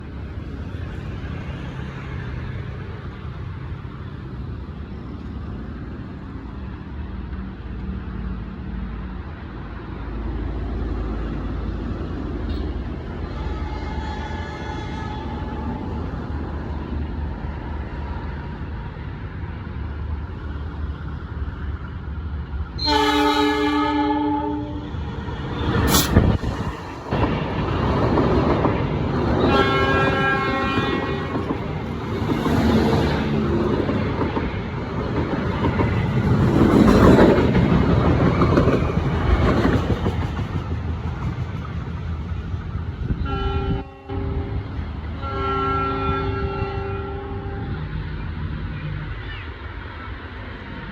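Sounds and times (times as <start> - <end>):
train horn: 12.5 - 15.8, 22.8 - 25.1, 29.4 - 31.6, 43.1 - 47.9
rush of wind: 24.6 - 50.9
train wheels clattering: 30.7 - 42.4.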